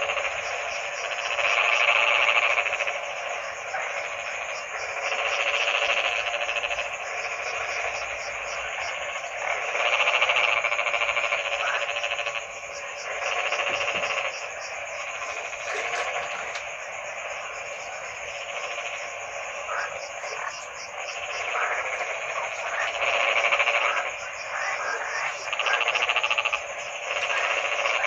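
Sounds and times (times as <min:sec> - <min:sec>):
frogs croaking: 0:00.0 - 0:28.0.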